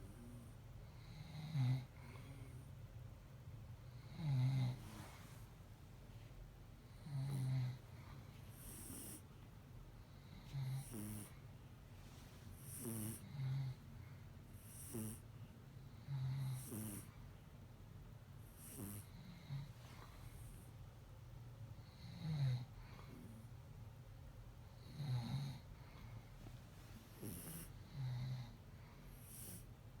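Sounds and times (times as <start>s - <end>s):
kitten snoring: 0.0s - 2.6s, 3.9s - 5.4s, 6.9s - 9.3s, 10.1s - 11.5s, 12.6s - 13.9s, 14.5s - 15.3s, 15.9s - 17.2s, 18.4s - 20.7s, 21.8s - 23.5s, 24.6s - 29.8s.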